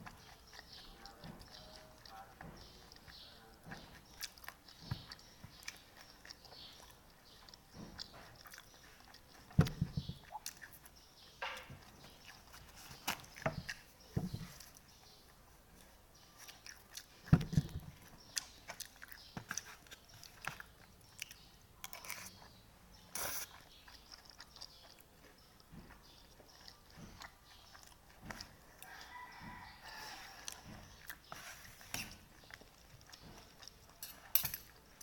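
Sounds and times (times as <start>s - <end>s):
person chewing noodles: 0.0s - 35.0s.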